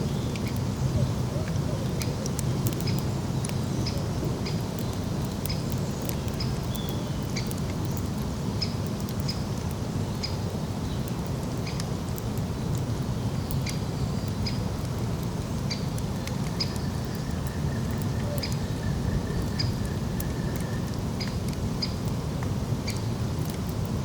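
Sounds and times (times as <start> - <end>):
campfire crackling and popping: 0.1 - 24.0
low steady rumble: 9.7 - 24.0.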